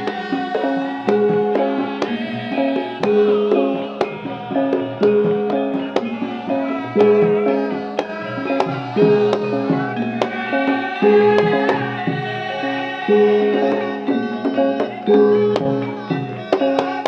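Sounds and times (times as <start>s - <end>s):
hand drum strokes: 0.0s - 17.0s
ringing pitched struck notes: 0.0s - 17.0s.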